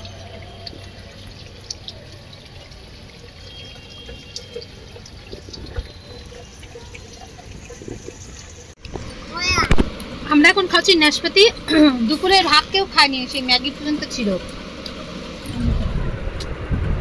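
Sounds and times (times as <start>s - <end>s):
small water drips: 0.0s - 15.6s
water trickling: 0.0s - 16.5s.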